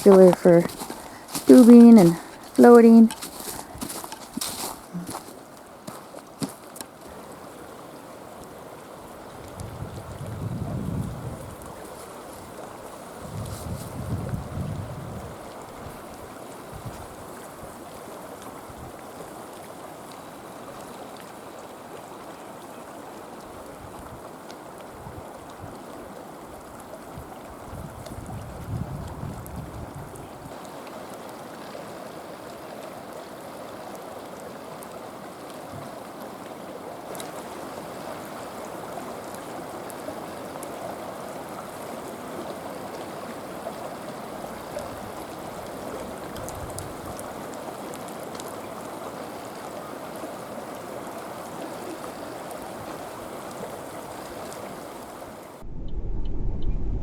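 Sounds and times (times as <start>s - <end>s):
river water rushing: 0.0s - 10.1s, 11.5s - 13.3s, 30.5s - 55.6s.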